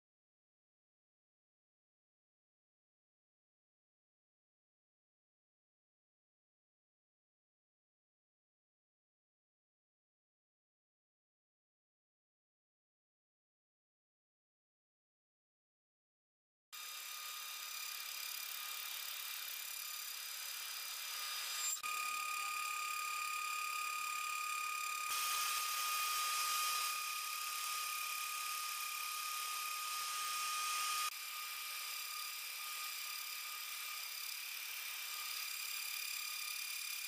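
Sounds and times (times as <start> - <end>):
milling metal cutting noise: 16.8 - 37.0
router spindle whining: 16.8 - 37.0.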